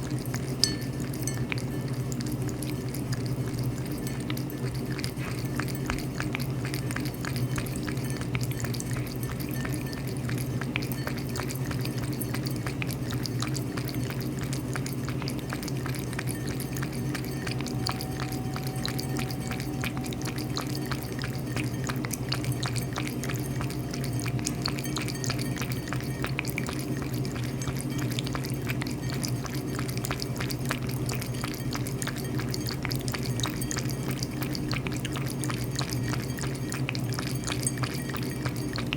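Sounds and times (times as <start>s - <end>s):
cat lapping water: 0.0s - 38.9s
low hum: 16.2s - 38.7s.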